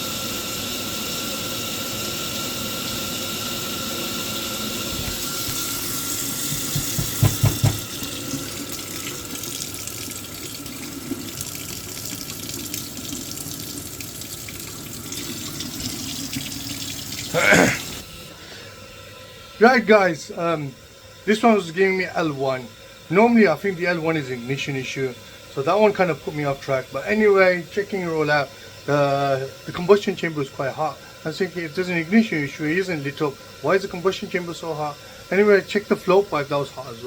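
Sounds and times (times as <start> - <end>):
quick low knocks: 6.5 - 7.9.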